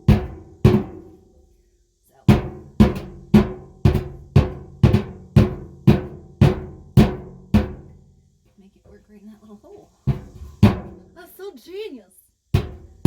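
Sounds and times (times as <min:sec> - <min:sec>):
rock hammering a tin tub: 0:00.0 - 0:01.3, 0:02.3 - 0:08.1, 0:10.0 - 0:11.2, 0:12.5 - 0:13.0.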